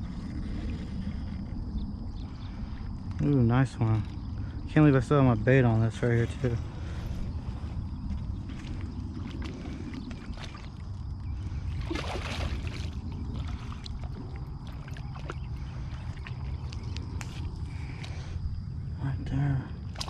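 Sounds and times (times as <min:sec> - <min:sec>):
steady low rumble: 0:00.0 - 0:20.0
water splashing and sloshing: 0:06.4 - 0:18.6.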